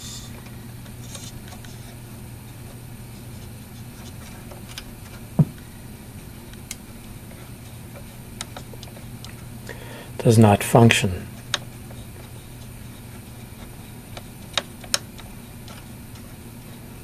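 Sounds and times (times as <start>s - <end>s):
oscilloscope low hum: 0.0s - 17.0s
soft thump: 5.4s - 5.6s.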